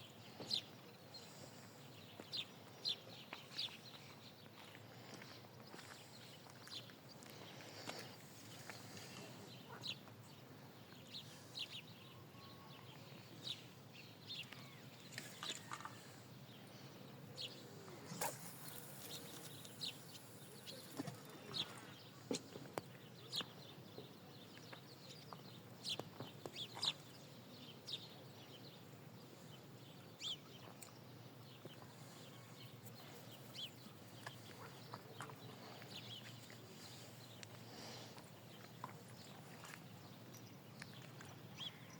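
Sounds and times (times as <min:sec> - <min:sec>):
small birds chirping: 0:00.0 - 0:41.9.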